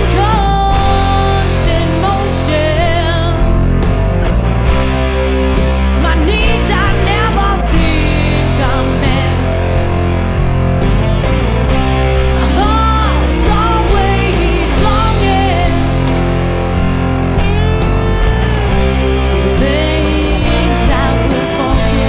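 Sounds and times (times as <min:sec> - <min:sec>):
person singing: 0:00.0 - 0:03.6, 0:05.9 - 0:10.0, 0:12.3 - 0:17.2, 0:18.8 - 0:22.0
rock song with electric guitars: 0:00.0 - 0:22.0.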